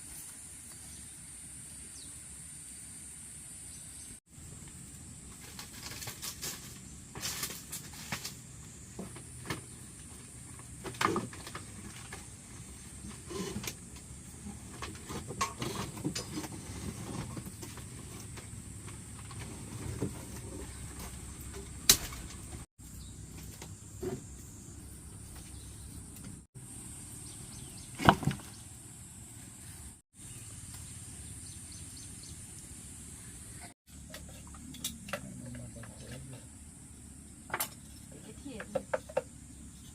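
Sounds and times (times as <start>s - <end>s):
wood knocking and clattering: 28.0s - 28.5s.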